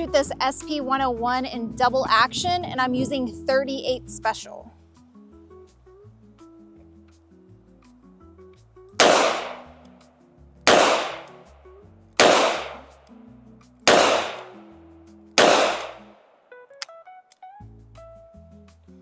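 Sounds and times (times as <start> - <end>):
revolver shots with echo: 9.0 - 9.8, 10.7 - 11.5, 12.2 - 13.0, 13.9 - 14.7, 15.4 - 16.2.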